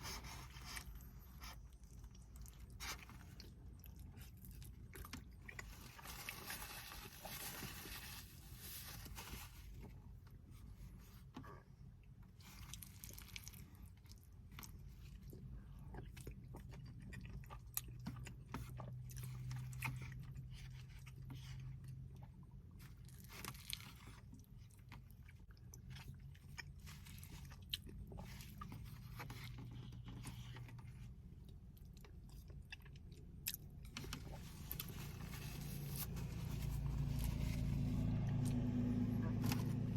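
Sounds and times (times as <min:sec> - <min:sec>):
person chewing food: 0:00.0 - 0:08.4, 0:09.0 - 0:39.9.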